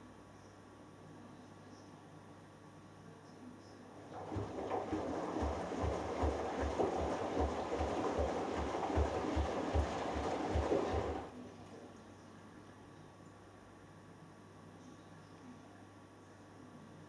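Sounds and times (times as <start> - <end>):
washing machine drum sloshing: 4.0 - 11.3
low thump of laundry: 4.1 - 11.3.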